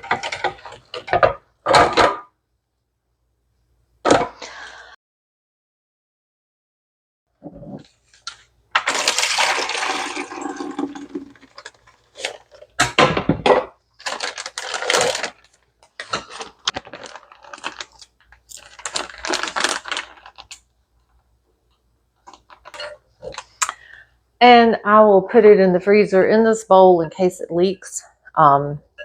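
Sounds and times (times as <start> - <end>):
containers clattering and knocking: 0.0 - 2.2, 8.8 - 15.4
liquid pouring: 8.9 - 12.1.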